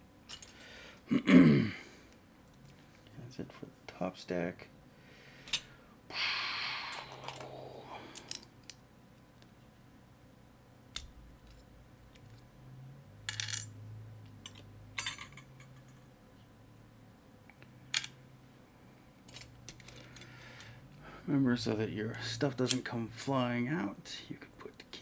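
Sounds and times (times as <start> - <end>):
metal clicks and clinks: 14.4 - 16.1.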